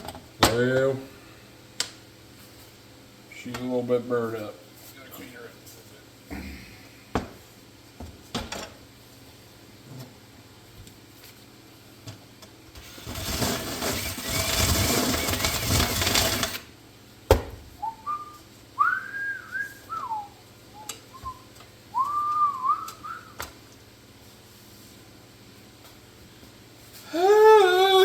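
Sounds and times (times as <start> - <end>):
person whistling a tune: 17.8 - 23.4.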